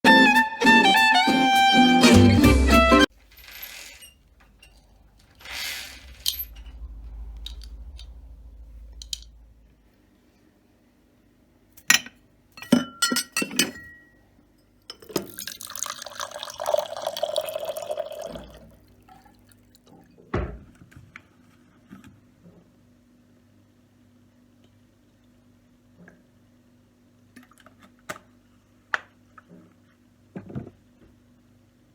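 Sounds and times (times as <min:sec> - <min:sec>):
glassware clinking: 0:11.9 - 0:14.2, 0:14.9 - 0:18.6
water being poured: 0:15.2 - 0:19.8
running liquid: 0:15.2 - 0:19.9.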